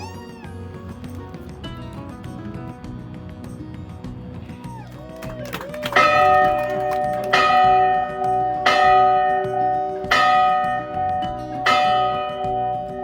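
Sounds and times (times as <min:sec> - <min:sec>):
ship's bell ringing: 0:06.0 - 0:13.0.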